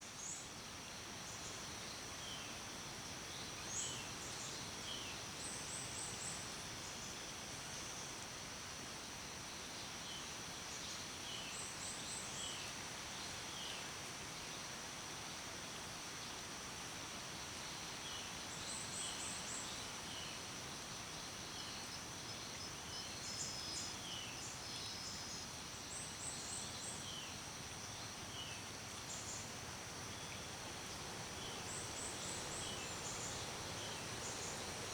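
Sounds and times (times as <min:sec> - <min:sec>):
steady hiss: 0:14.0 - 0:34.9.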